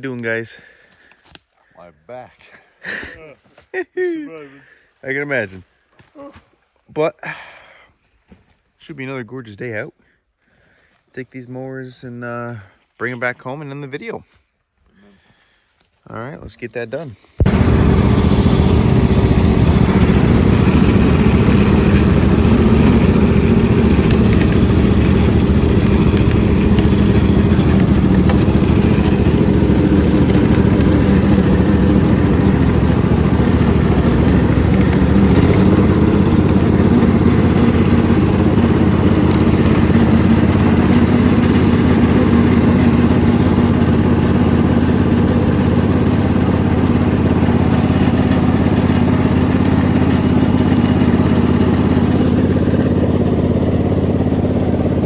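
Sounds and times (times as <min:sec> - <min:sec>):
riding lawn mower engine running: 0:17.4 - 0:55.0.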